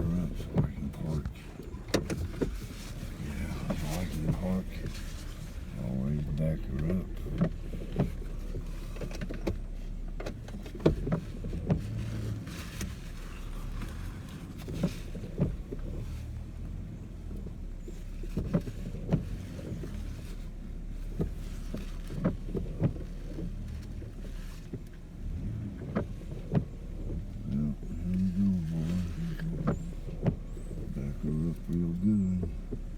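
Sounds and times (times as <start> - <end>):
steady low hum: 0.0 - 10.3
vehicle engine running slowly: 0.0 - 32.9.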